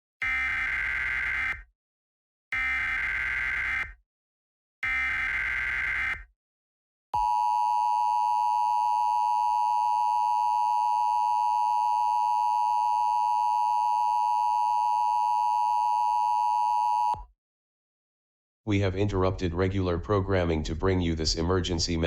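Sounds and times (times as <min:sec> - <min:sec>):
loud steady electronic tone: 0:00.2 - 0:01.6, 0:02.6 - 0:03.9, 0:04.8 - 0:06.2, 0:07.2 - 0:17.2.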